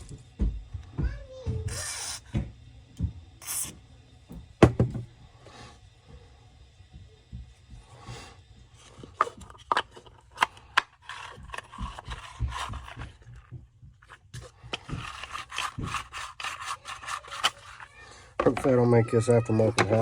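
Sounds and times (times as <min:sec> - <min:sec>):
rapid scraping and rubbing: 0:10.4 - 0:18.0.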